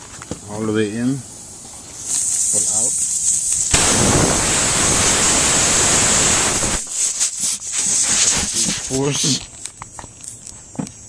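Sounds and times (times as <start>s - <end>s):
air hissing out of tyre: 1.0s - 9.4s.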